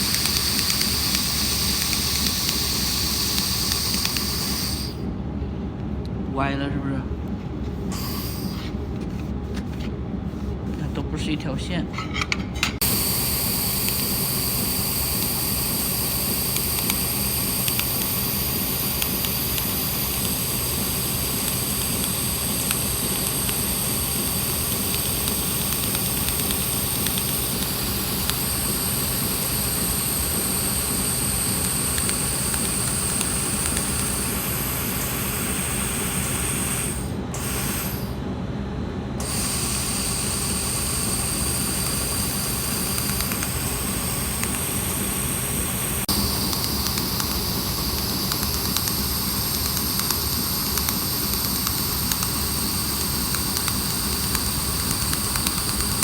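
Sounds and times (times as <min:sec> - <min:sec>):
laser welding machine hissing: 0:00.0 - 0:05.1, 0:07.9 - 0:08.8, 0:12.8 - 0:38.3, 0:39.2 - 0:56.0
high-pitched whining tones: 0:39.2 - 0:56.0.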